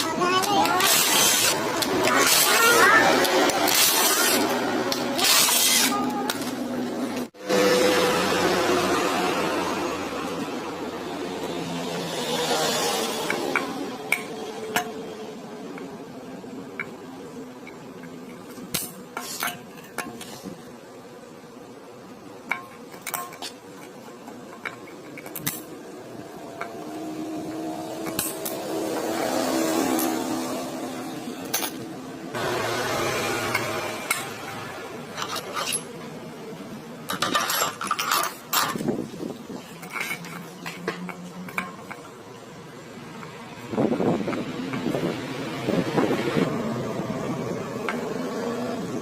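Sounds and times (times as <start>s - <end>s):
metal parts scraping: 0.7s - 7.3s, 17.7s - 20.6s, 22.5s - 25.8s, 28.0s - 28.6s, 35.1s - 36.0s, 37.0s - 42.0s
metal parts clinking and rattling: 31.4s - 31.8s, 35.2s - 35.9s, 37.1s - 38.9s, 39.6s - 42.0s.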